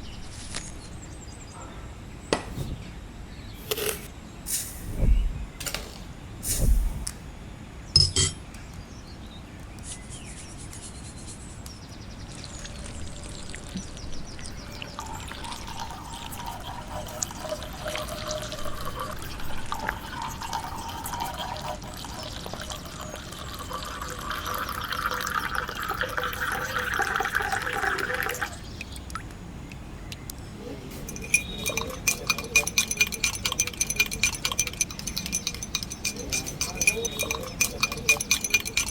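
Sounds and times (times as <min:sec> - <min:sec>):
liquid pouring into vessel: 0:12.3 - 0:29.2, 0:31.0 - 0:38.9.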